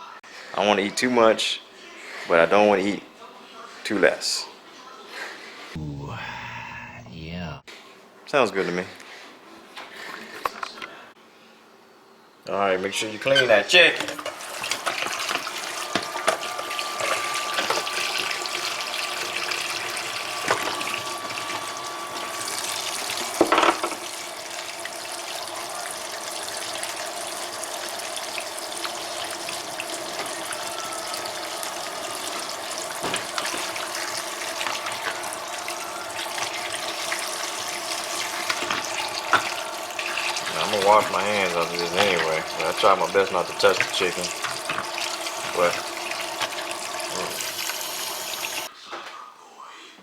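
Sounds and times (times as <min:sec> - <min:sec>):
tap running into sink: 0:14.0 - 0:48.7.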